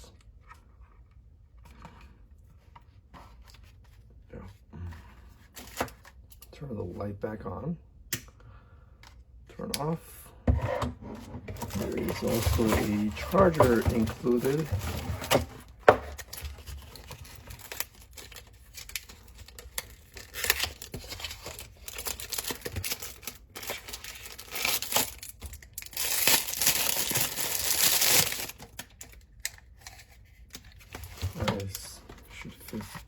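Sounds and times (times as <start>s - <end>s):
plastic packaging crinkling: 11.6s - 33.0s.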